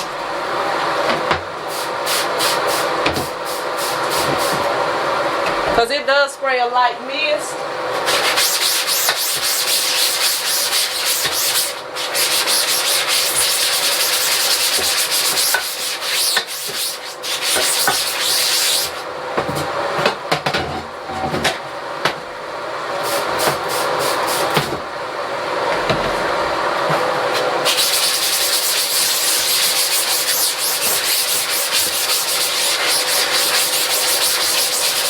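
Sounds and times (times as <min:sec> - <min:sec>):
scrubbing mesh screen: 0:27.7 - 0:35.0.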